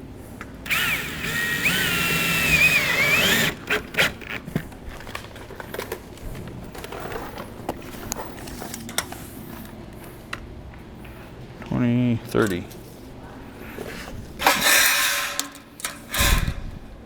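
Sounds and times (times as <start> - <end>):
power drill whining: 0.7 - 4.4.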